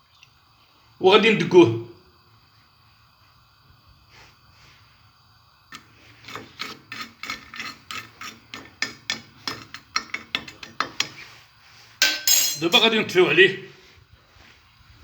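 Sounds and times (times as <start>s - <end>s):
spoon scraping pits in a pan: 5.7s - 13.0s.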